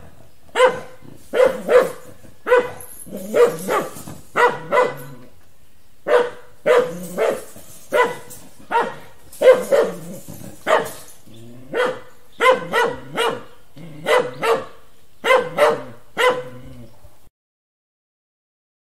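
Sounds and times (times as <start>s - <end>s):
dog barking: 0.5s - 5.2s, 6.0s - 11.1s, 11.7s - 16.6s.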